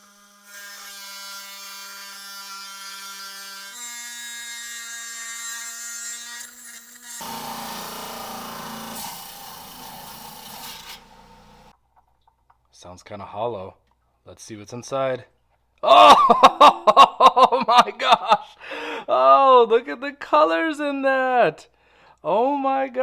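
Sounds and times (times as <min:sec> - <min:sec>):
saw blade grinding stone: 0:00.0 - 0:11.7
electric saw motor whine: 0:07.0 - 0:11.7.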